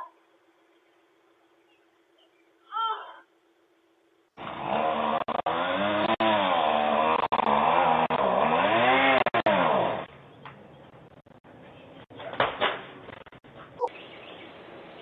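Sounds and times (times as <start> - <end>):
small engine revving: 4.4 - 10.1.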